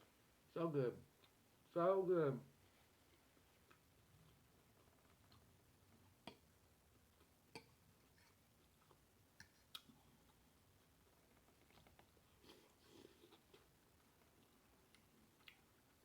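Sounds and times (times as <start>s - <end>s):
mouth smacking while eating: 7.2s - 10.4s.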